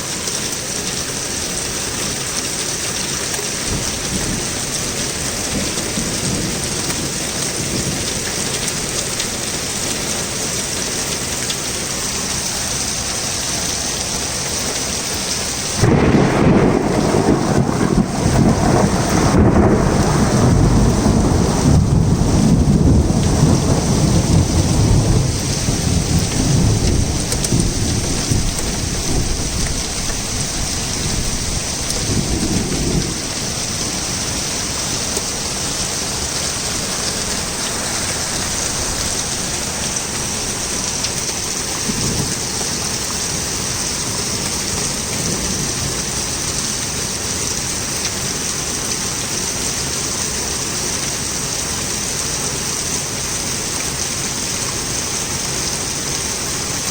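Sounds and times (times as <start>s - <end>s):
torrential rain: 0.0s - 56.9s
thunder rumbling: 3.4s - 9.8s, 15.8s - 47.2s.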